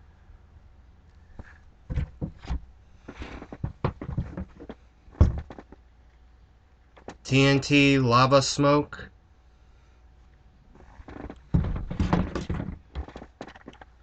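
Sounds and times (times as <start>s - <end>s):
packages knocking and clicking: 1.9s - 5.8s, 11.0s - 14.0s.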